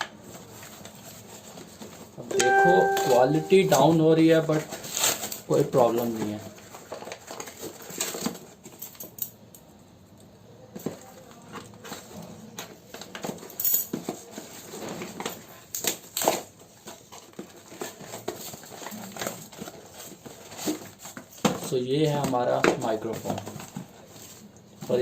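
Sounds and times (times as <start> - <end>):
packaging rustling: 3.7 - 8.8, 10.8 - 22.2.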